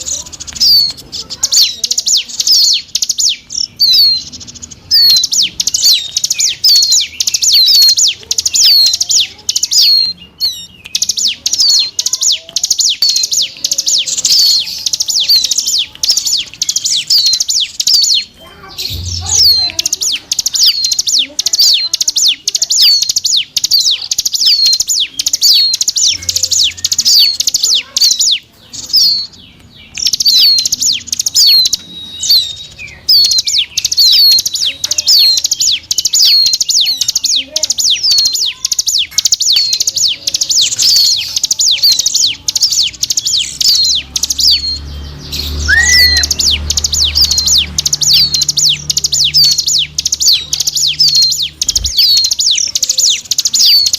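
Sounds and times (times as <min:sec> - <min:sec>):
bird chirping: 0:00.0 - 0:53.9
low whistle: 0:45.7 - 0:46.2.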